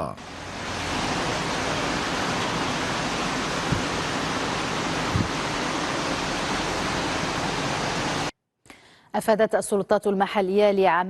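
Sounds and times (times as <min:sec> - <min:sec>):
rushing water: 0:00.2 - 0:08.3.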